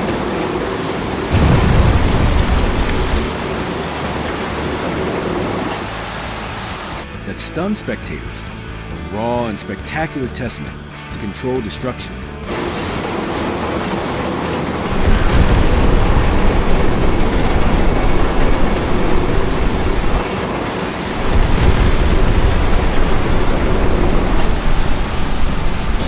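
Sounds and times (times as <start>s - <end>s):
demolition rumbling: 0.0s - 7.0s, 12.4s - 26.0s
steady noisy din: 0.0s - 7.0s, 12.4s - 26.0s.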